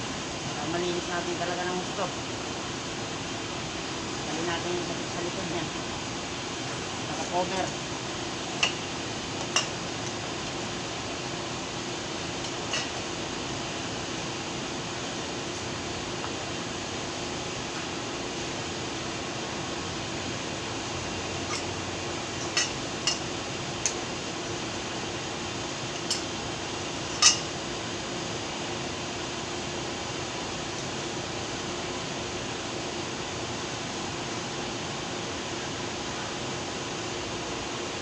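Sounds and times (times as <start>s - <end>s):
steady hiss: 0.0s - 38.0s.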